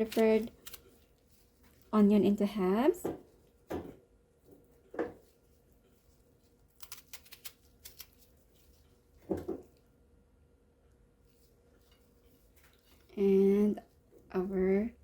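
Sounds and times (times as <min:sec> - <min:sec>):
onion crackling as cut: 0:06.7 - 0:08.4.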